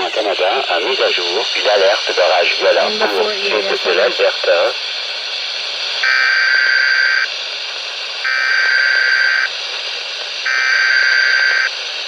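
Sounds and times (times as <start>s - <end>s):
radio hiss: 0.0s - 5.0s.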